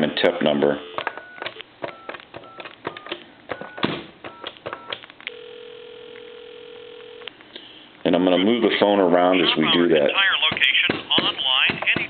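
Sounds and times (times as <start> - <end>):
keypad tones: 0.8 - 7.3
telephone ringback tone: 5.3 - 7.3.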